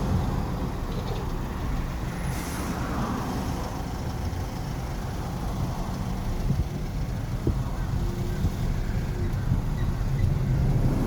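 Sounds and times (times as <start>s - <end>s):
rumble of passing vehicles: 0.0s - 11.0s.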